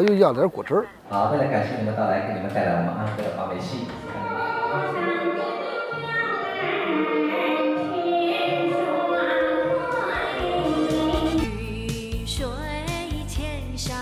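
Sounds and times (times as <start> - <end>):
person singing opera: 4.0 - 12.2.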